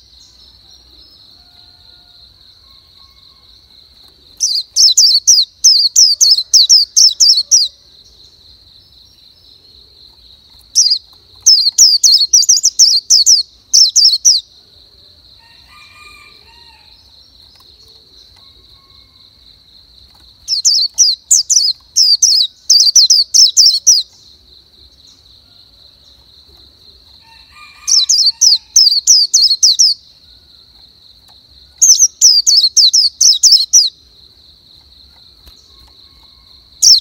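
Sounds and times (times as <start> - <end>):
bird singing rapid chirps: 4.3 - 7.8, 10.6 - 14.5, 20.2 - 24.5, 27.9 - 30.0, 31.7 - 34.0, 35.4 - 37.0.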